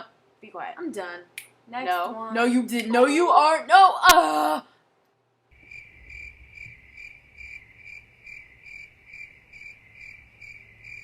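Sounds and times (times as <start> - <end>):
crickets chirping: 5.5 - 11.0.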